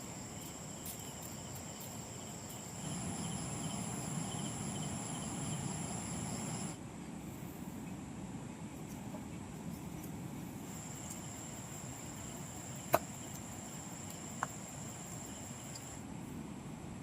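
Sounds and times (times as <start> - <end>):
high-pitched insect drone: 0.0 - 6.8, 10.7 - 16.0
low outdoor rumble: 0.0 - 17.0.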